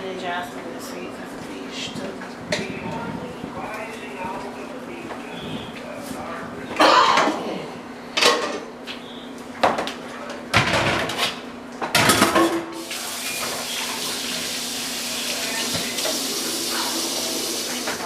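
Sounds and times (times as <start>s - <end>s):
pots and pans clattering: 11.9s - 13.8s
steady hiss: 12.8s - 18.0s.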